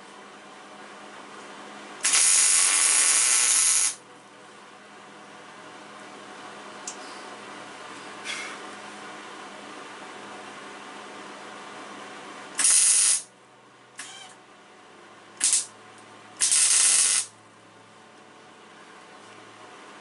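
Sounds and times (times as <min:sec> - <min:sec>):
arc welder hissing and crackling: 0:02.0 - 0:04.0, 0:12.6 - 0:13.3, 0:15.4 - 0:15.7, 0:16.4 - 0:17.3.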